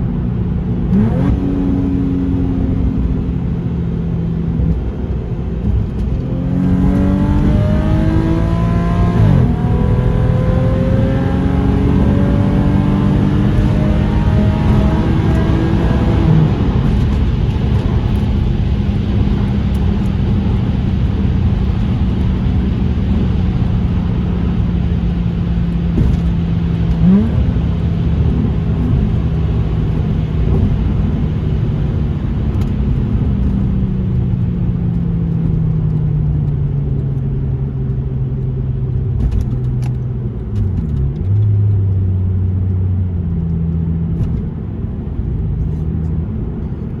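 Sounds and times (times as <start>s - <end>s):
car engine driving: 0.0s - 47.0s.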